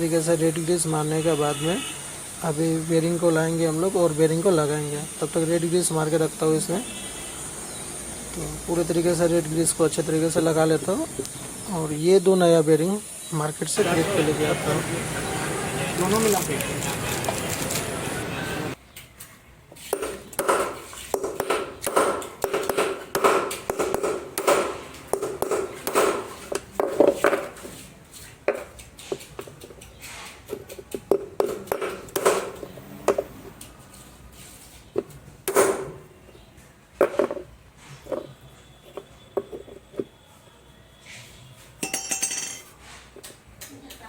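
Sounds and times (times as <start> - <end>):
ringing metal-on-metal taps: 41.8 - 42.7.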